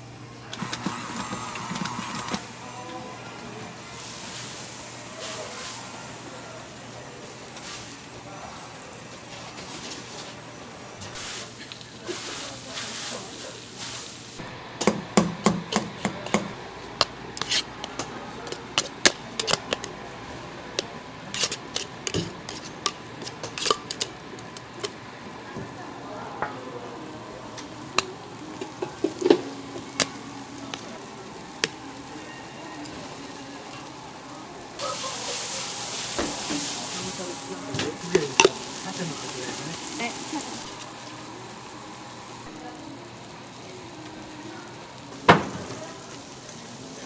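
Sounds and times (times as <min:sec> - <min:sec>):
food sizzling in frying: 0:00.6 - 0:14.5, 0:18.6 - 0:47.0
utensils clicking and tapping: 0:14.8 - 0:20.0, 0:20.8 - 0:25.7, 0:27.5 - 0:32.1, 0:32.7 - 0:42.3
stirring: 0:27.9 - 0:42.4.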